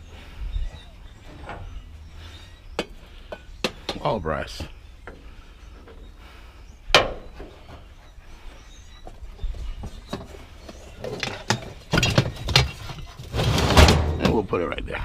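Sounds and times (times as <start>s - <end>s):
scrap metal clanking: 11.0s - 14.5s.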